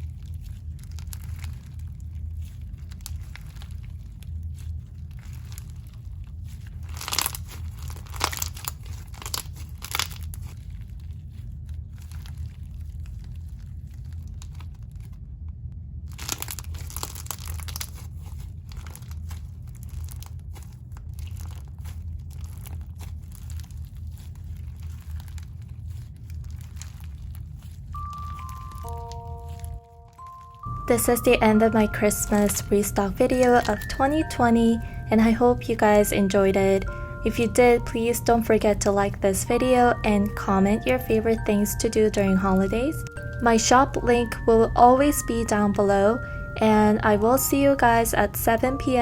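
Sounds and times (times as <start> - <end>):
crunchy slime squished by hand: 0.0 - 15.2, 16.0 - 31.0.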